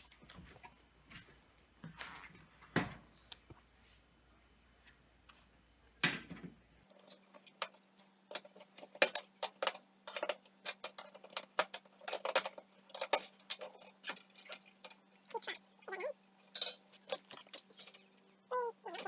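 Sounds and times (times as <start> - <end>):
light fixture parts clicking: 6.9 - 19.0.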